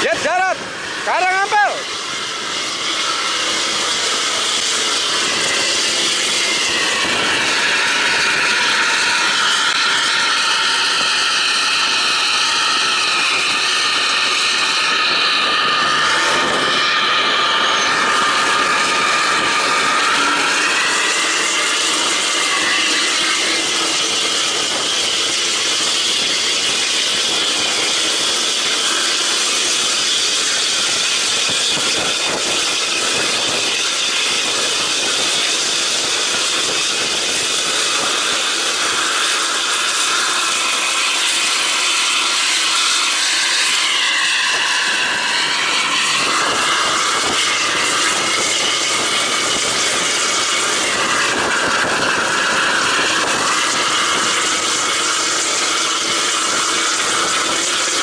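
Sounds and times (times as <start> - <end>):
bus engine whine: 0.0 - 39.0.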